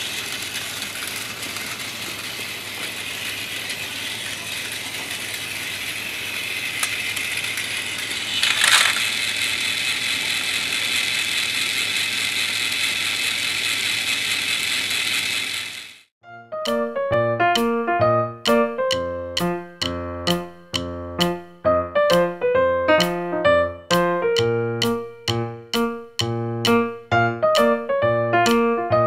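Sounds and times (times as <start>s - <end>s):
toy train motor whirring: 0.0s - 16.1s
sharp plastic clack: 8.4s - 9.1s.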